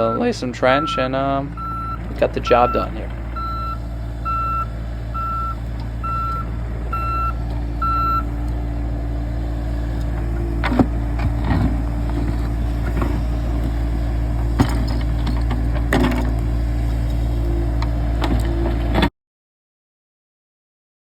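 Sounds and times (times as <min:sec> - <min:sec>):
excavator alarm beeping: 0:00.0 - 0:10.6
diesel engine running: 0:00.0 - 0:19.1.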